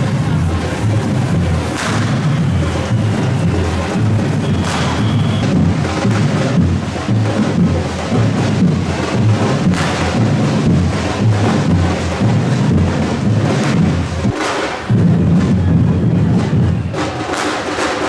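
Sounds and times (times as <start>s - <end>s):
firework bangs: 0.0s - 7.0s
drums beating: 0.0s - 18.0s.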